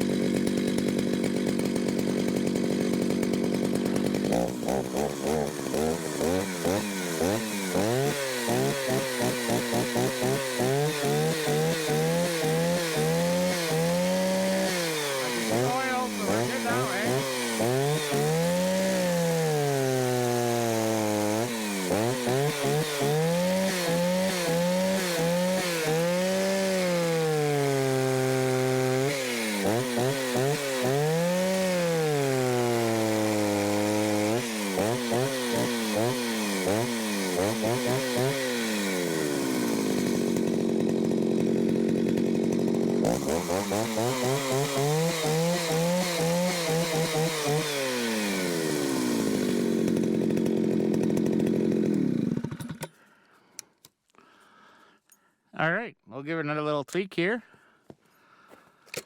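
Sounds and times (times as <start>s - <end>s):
chainsaw revving: 0.0s - 54.8s.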